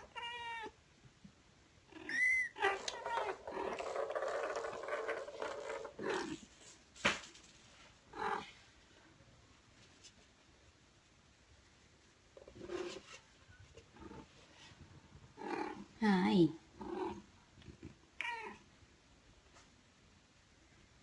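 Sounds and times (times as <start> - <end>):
cats meowing: 1.9 - 4.7.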